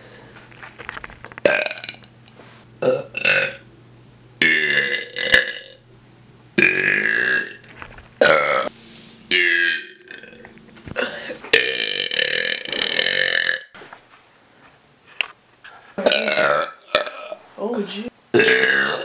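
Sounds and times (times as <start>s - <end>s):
man belching: 1.4s - 2.1s, 2.8s - 3.6s, 4.4s - 5.8s, 6.6s - 7.6s, 8.2s - 8.7s, 9.3s - 10.4s, 11.0s - 13.7s, 16.0s - 17.4s, 18.3s - 19.0s.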